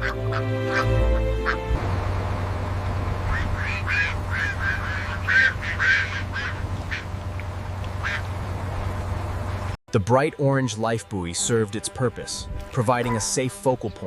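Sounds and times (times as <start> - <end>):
ducks quacking: 0.0 - 1.7, 3.2 - 7.2, 7.9 - 8.4, 12.3 - 13.8
steady low hum: 0.0 - 9.8.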